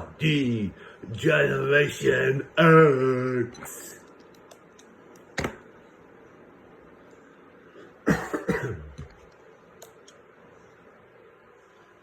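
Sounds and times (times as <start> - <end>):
person coughing: 8.0 - 9.2.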